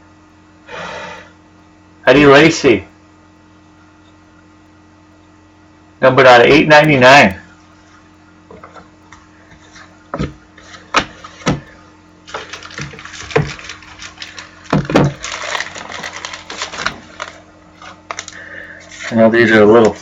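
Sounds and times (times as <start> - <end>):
card pack rustling and crackling: 10.6 - 20.0.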